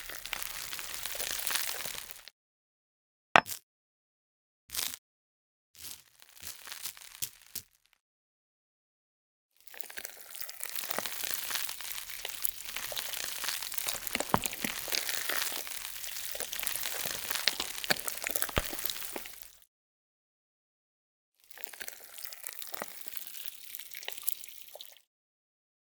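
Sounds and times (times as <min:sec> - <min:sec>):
crisp crackling and crinkling: 0:10.8 - 0:19.6.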